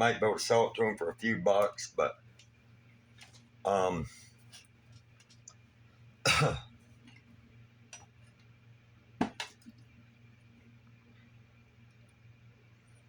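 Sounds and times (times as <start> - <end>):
man coughing: 6.3 - 6.7.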